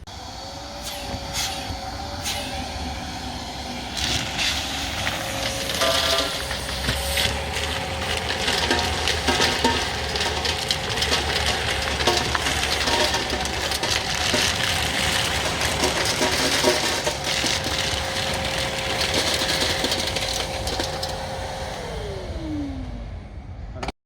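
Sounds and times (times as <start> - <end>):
motor spinning down: 0.0 - 23.7
vacuum cleaner motor whine: 0.0 - 23.8.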